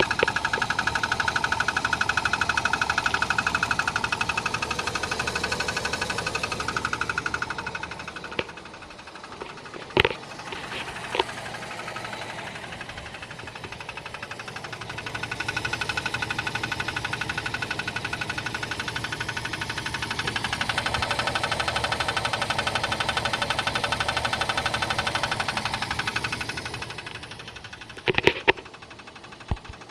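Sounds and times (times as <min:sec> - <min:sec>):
engine running with ticking knock: 0:00.0 - 0:29.9
sharp clacks: 0:19.9 - 0:29.9.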